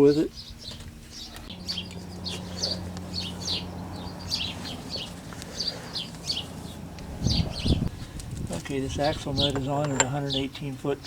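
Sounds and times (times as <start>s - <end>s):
small birds chirping: 0.0s - 11.0s
steady low hum: 0.0s - 11.0s.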